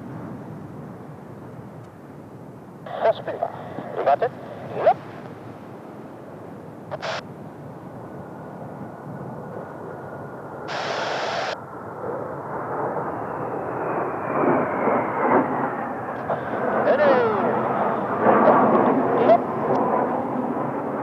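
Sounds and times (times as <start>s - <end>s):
distant jet aircraft rush: 0.0s - 21.0s
high whine sliding down: 10.7s - 11.6s
short bursts of hiss: 10.7s - 11.6s.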